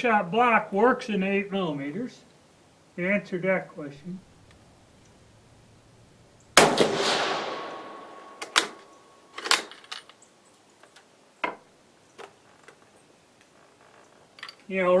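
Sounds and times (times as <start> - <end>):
rifle shot: 6.6 - 8.9.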